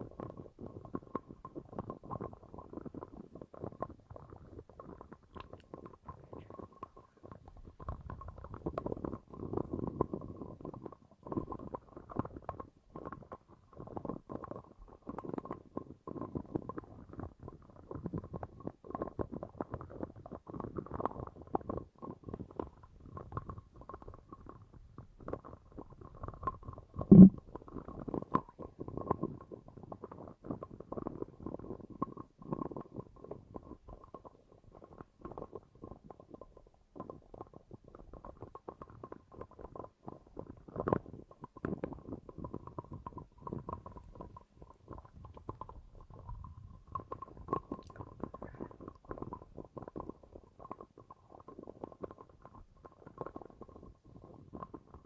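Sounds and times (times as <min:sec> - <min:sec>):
muffled low gurgling and rumbling: 0:26.7 - 0:27.5.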